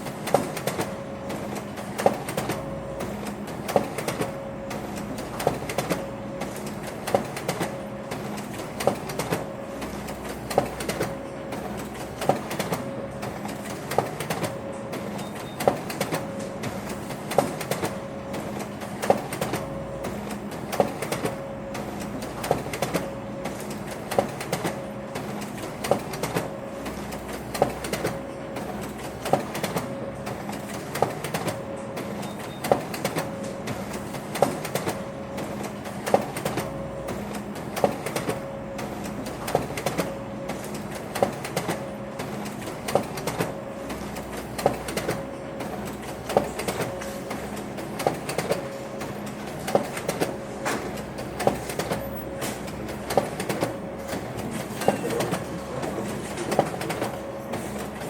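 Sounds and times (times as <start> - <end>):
printer clicking: 0.0 - 58.0
printer whirring hum: 0.0 - 58.0.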